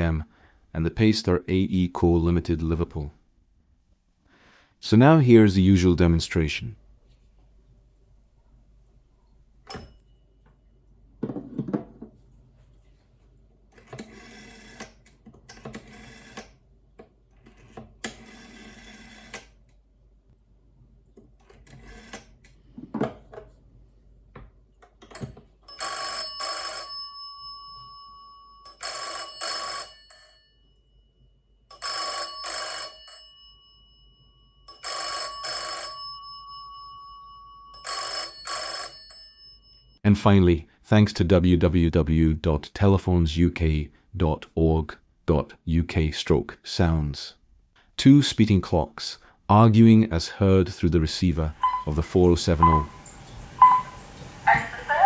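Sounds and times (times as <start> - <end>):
telephone bell ringing: 25.2 - 40.0, 51.6 - 53.0, 53.6 - 54.0.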